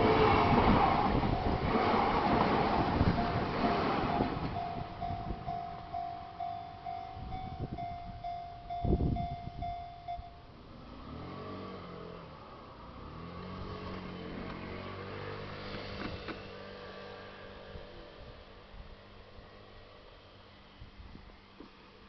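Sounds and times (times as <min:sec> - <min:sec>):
train running noise: 0:00.0 - 0:10.4
level crossing warning bell: 0:01.0 - 0:10.6
car engine pulling away: 0:10.5 - 0:18.3.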